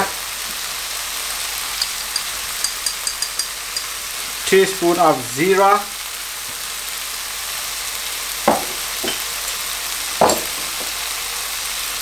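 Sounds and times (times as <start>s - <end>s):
masala sizzling in oil: 0.0s - 12.0s
utensil knocking against pan: 1.8s - 4.0s, 8.5s - 9.3s, 10.2s - 11.0s.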